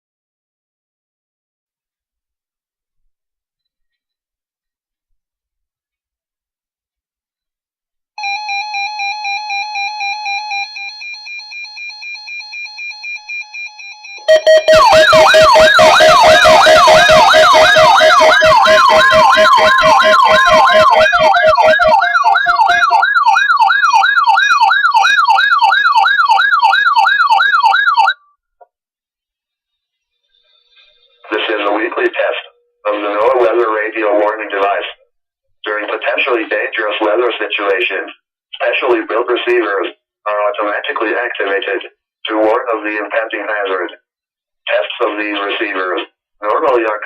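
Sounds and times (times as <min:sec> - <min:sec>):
electronic siren sweeping: 0:14.2 - 0:28.2
fast electronic beeping: 0:14.2 - 0:28.2.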